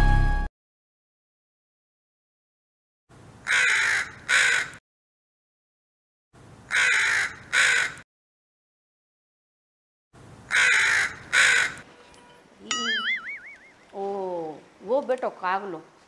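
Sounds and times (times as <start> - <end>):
crow cawing: 3.4 - 4.8, 6.7 - 8.0, 10.5 - 11.9.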